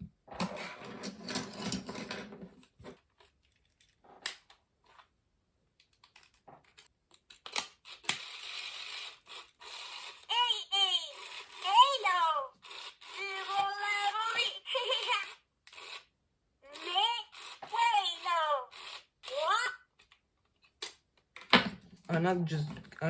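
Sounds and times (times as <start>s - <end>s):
toy mechanical clicks and rattles: 5.8s - 16.1s, 16.7s - 21.0s
high electronic toy voice: 10.0s - 15.4s, 16.6s - 19.9s.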